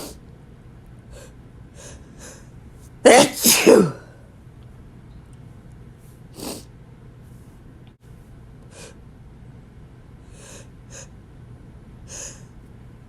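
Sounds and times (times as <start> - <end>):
low steady hum: 0.0 - 13.0
man sniffing: 3.1 - 4.0
wet sneezes: 3.1 - 4.1.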